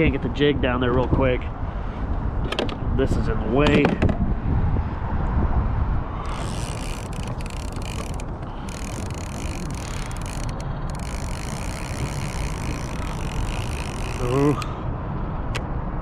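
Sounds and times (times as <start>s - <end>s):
wind rumble on microphone: 0.0s - 16.0s
fishing reel ratchet whirring: 6.2s - 14.7s.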